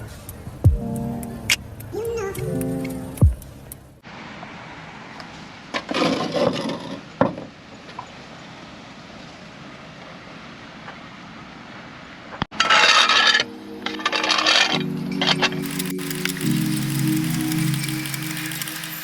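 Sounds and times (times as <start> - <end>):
scraping and rubbing: 12.5 - 13.5
loud burst of noise: 15.6 - 19.0.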